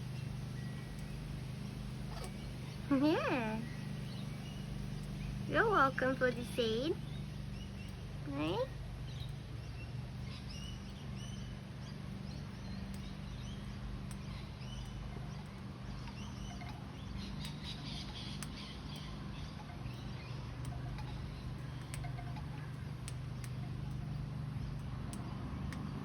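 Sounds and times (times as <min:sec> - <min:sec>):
steady low hum: 0:00.0 - 0:26.0
parrots chirping: 0:00.2 - 0:05.5.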